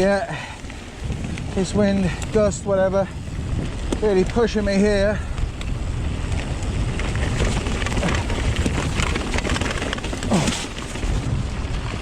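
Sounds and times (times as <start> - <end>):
wind buffeting microphone: 0.0 - 12.0
bike knocks and rattles: 3.6 - 11.9.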